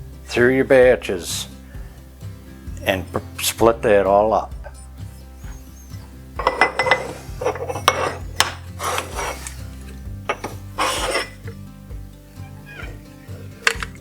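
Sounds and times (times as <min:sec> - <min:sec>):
light background music: 0:00.0 - 0:14.0
stone tiles clinking and scraping: 0:06.0 - 0:11.6, 0:12.6 - 0:14.0.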